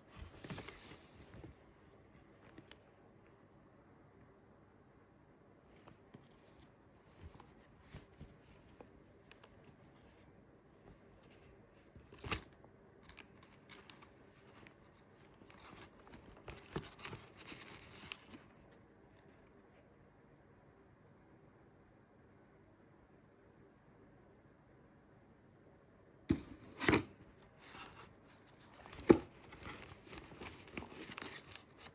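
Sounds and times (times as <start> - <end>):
packaging rustling and crinkling: 0.0 - 1.6, 11.2 - 18.8, 26.8 - 31.9.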